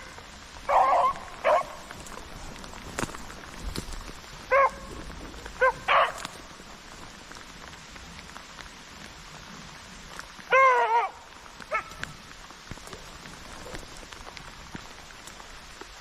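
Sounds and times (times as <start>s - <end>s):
dogs barking: 0.6s - 2.2s, 4.5s - 5.0s, 5.6s - 6.4s, 10.5s - 12.0s.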